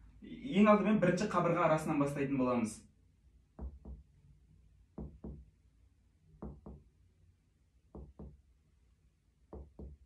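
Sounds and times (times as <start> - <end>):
finger tapping on chest: 3.6 - 4.0, 5.0 - 5.4, 6.4 - 6.9, 7.9 - 8.4, 9.5 - 10.0.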